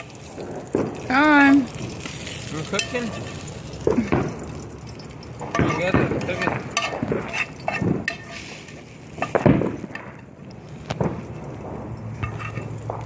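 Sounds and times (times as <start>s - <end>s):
low background rumble: 3.2s - 13.0s.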